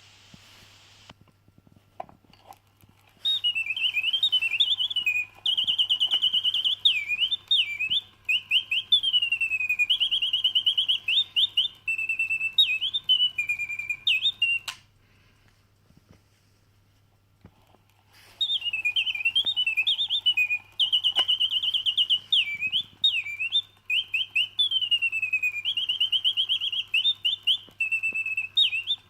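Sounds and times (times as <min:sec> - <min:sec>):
mechanical bird whistle song: 0:03.2 - 0:14.8, 0:18.4 - 0:29.0.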